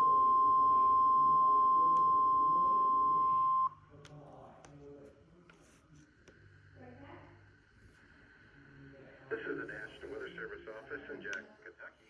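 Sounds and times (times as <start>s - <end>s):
weather radio alarm tone: 0.0s - 3.7s.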